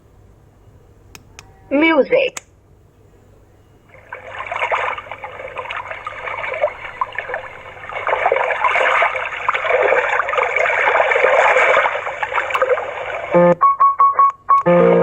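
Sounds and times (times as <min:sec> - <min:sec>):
splashing water noise from small speaker: 0:03.9 - 0:13.4.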